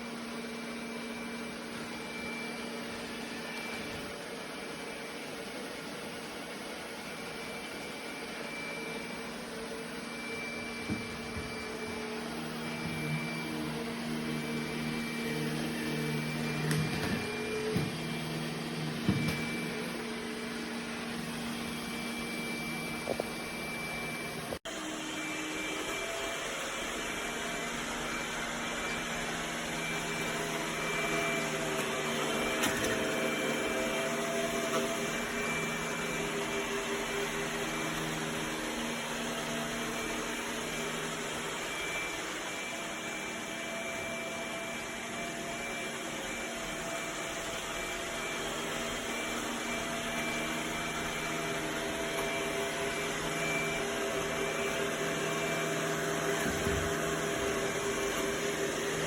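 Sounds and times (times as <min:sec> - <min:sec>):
robot vacuum motor hum: 0:00.0 - 0:59.0.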